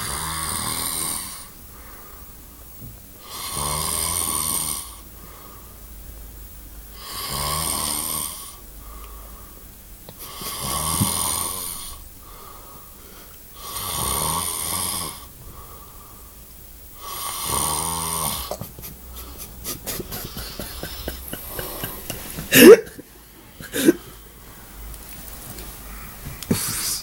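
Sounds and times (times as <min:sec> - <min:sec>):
person snoring loudly: 0:00.0 - 0:01.5, 0:03.2 - 0:05.0, 0:07.0 - 0:08.6, 0:10.2 - 0:12.0, 0:13.6 - 0:15.3, 0:17.0 - 0:23.0, 0:23.6 - 0:24.2
quiet breathing: 0:01.1 - 0:03.4, 0:04.7 - 0:27.0.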